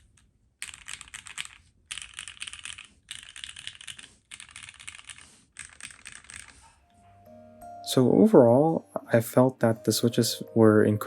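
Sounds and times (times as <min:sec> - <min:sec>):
clacky mechanical keyboard typing: 0:00.1 - 0:06.5.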